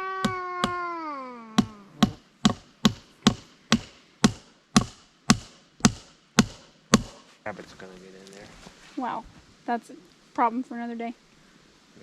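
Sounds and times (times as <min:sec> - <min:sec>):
hammer pounding wooden post: 0:00.1 - 0:00.9, 0:01.6 - 0:07.2.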